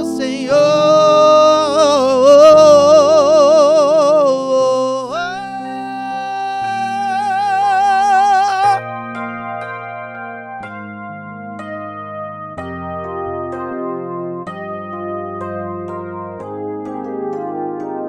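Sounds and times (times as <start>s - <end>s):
person singing with vibrato: 0.0s - 9.0s
sustained keyboard chords: 0.0s - 18.0s.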